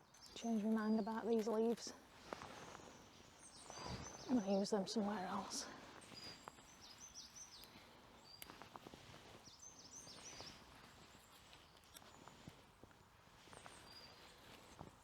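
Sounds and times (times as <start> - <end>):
soft clicks and rustles: 6.0 - 15.0.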